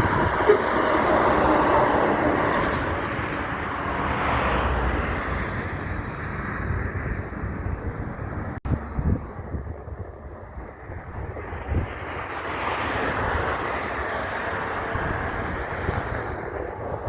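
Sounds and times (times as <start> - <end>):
heavy truck passing: 0.0 - 9.6
wind buffeting microphone: 0.0 - 17.0.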